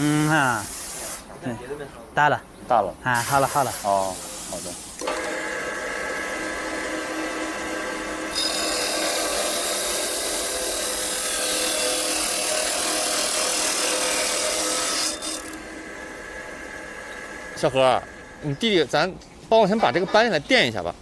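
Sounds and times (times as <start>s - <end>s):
power cutter motor whining: 5.0s - 18.6s
abrasive disc grinding metal: 5.1s - 18.8s.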